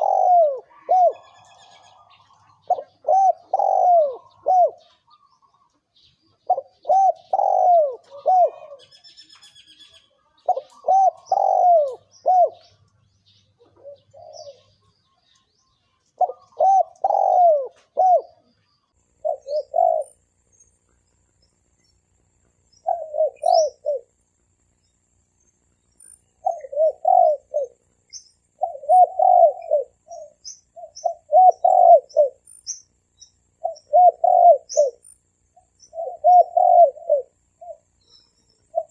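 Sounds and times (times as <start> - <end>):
dove cooing: 0.0 - 9.2, 10.4 - 12.8, 13.6 - 14.8, 16.2 - 18.5, 19.2 - 20.3, 22.8 - 24.2, 26.3 - 27.9, 28.5 - 32.6, 33.6 - 38.9.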